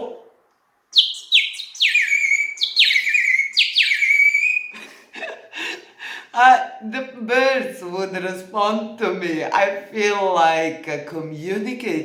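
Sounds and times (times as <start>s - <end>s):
clay water whistle warbling: 1.0s - 4.7s.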